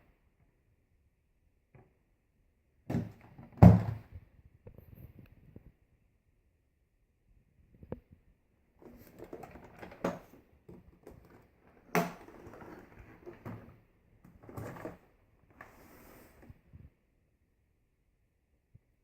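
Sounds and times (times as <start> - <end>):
hard plastic parts rattling: 8.8 - 13.7.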